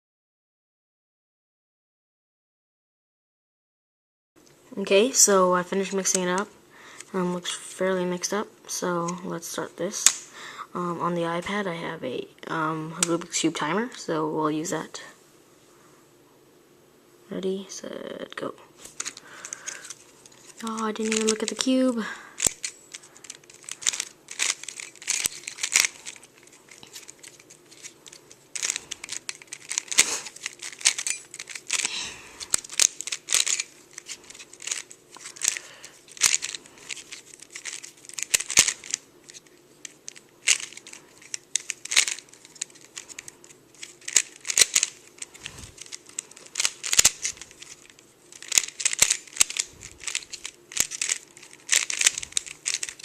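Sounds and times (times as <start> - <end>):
puzzle cube plastic clicks: 10.0 - 10.3, 18.9 - 21.8, 22.4 - 53.0.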